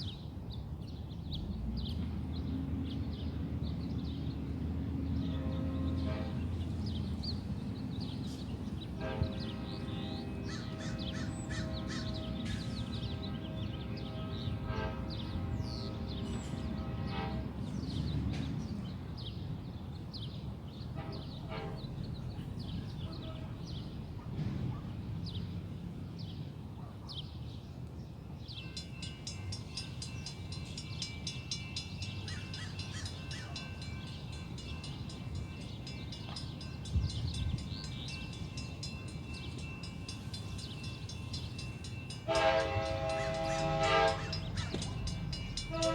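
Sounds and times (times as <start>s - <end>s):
grade crossing bells ringing: 4.3s - 19.6s, 28.5s - 45.9s
distant train horn: 4.4s - 18.9s, 20.7s - 24.8s, 40.2s - 45.9s
small birds chirping: 28.5s - 42.2s.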